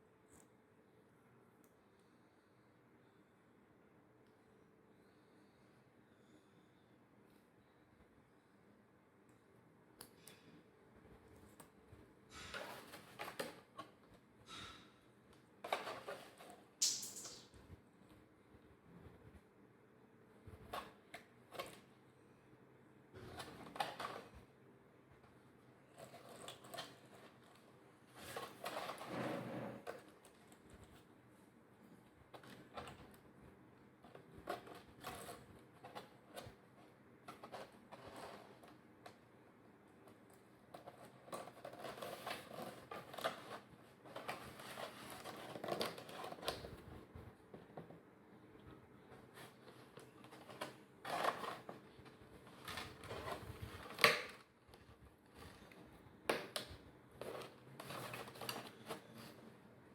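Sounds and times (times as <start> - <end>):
scraping or rustling: 15.6 - 17.4, 25.9 - 31.0, 37.2 - 38.8, 40.7 - 47.3, 49.1 - 54.1, 57.2 - 59.4.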